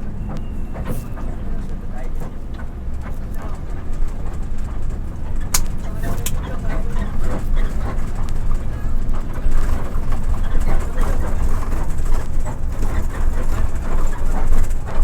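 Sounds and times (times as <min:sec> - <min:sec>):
indistinct voices: 0:00.0 - 0:15.0
motorcycle engine low rumble: 0:00.0 - 0:15.0
sharp clicks: 0:04.4 - 0:06.6.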